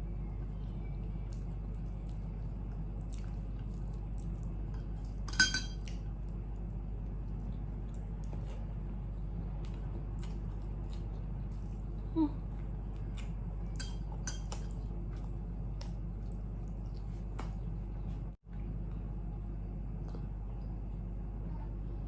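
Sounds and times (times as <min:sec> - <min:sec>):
steady low hum: 0:00.0 - 0:22.0
utensils and dishes clinking: 0:05.3 - 0:05.8, 0:13.7 - 0:14.7.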